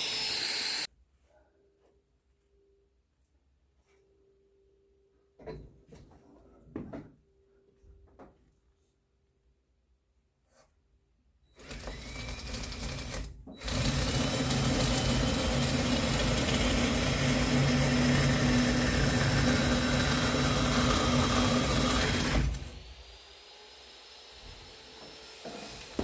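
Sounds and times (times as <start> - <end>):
power tool motor running: 0.0 - 0.9, 11.6 - 26.0.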